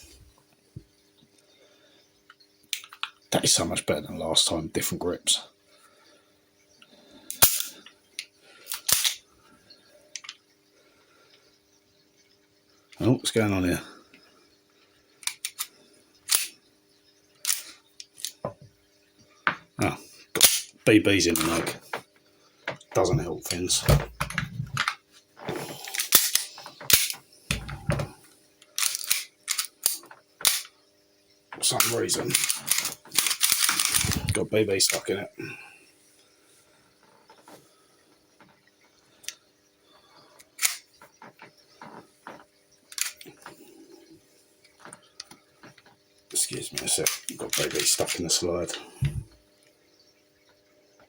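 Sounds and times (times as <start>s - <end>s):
air pistol metallic clacks: 7.3s - 7.7s
pistol slide scraping and clicking: 7.3s - 7.8s, 8.7s - 9.2s, 15.2s - 15.7s, 16.3s - 16.5s, 17.4s - 18.4s, 20.4s - 20.7s, 25.9s - 27.8s, 28.8s - 30.7s, 32.3s - 34.4s, 40.6s - 40.8s, 42.9s - 43.2s
dull handling knocks: 49.0s - 49.4s.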